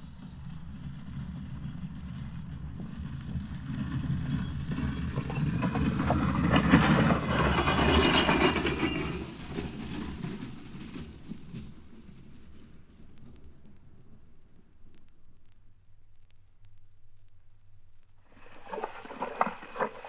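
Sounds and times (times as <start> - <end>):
high squeal: 0.1 - 12.5.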